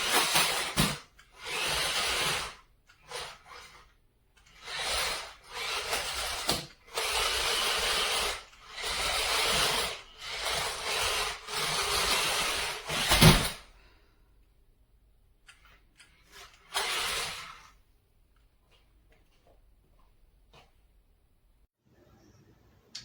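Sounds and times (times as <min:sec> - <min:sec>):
electric motors whirring: 0:00.0 - 0:13.6, 0:16.3 - 0:17.8.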